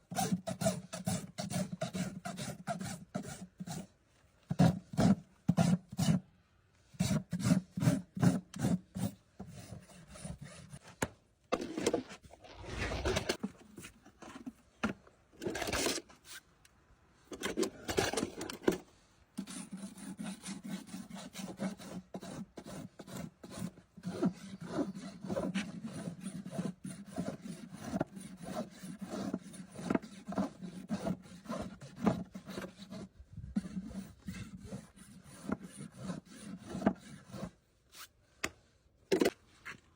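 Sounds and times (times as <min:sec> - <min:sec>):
rasp filing a hoof: 0:00.0 - 0:06.3, 0:06.9 - 0:11.0, 0:19.4 - 0:38.6.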